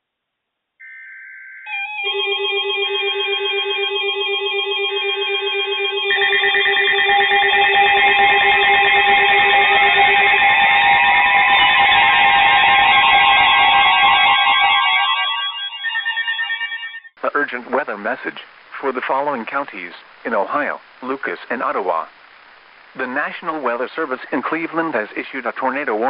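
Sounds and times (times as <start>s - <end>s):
warbling electronic alarm tones: 0.8s - 17.2s
buzzing data bursts: 2.0s - 16.4s.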